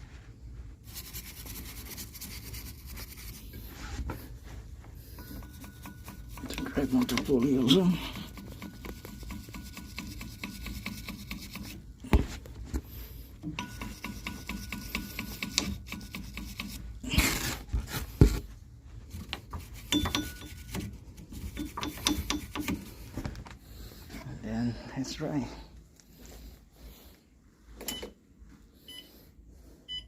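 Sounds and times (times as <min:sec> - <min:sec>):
wire brush scratching metal: 0:00.8 - 0:03.9, 0:05.1 - 0:11.9, 0:13.5 - 0:17.7, 0:19.2 - 0:23.0.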